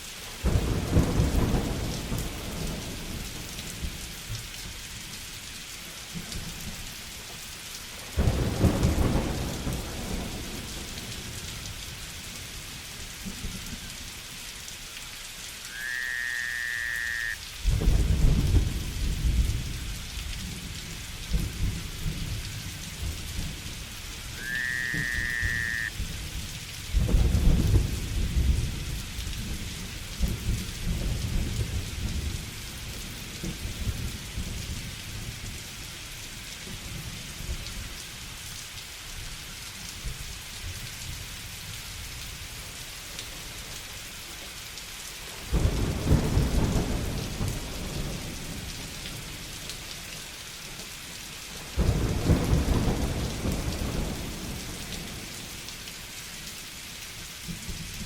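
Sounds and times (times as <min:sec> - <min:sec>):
steady rain: 0:00.0 - 0:58.0
thunder rumbling: 0:08.2 - 0:11.3, 0:15.8 - 0:20.7, 0:21.3 - 0:32.5, 0:45.5 - 0:48.8.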